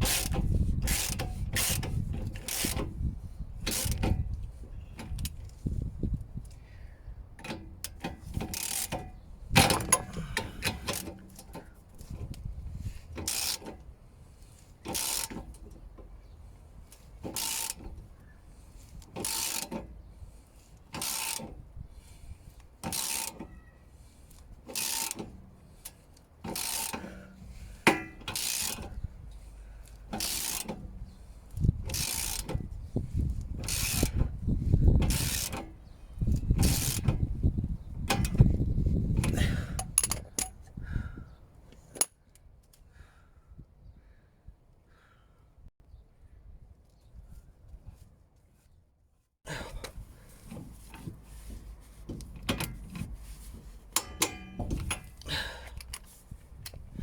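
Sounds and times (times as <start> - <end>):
ratchet wrench rasping: 0.0 - 2.8, 7.9 - 9.0, 13.2 - 13.7, 14.9 - 15.4, 17.4 - 17.8, 19.2 - 19.8, 21.0 - 21.5, 22.8 - 23.7, 24.7 - 25.2, 26.5 - 27.2, 27.8 - 29.0, 30.1 - 30.8, 31.9 - 32.6, 33.3 - 34.2, 35.1 - 35.7, 36.3 - 37.1.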